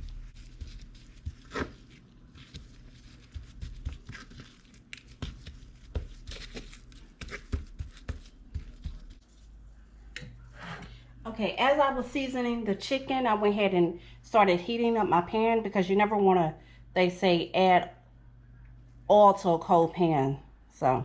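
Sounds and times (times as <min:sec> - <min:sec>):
gloved hands rustling and crinkling: 0:00.0 - 0:09.7.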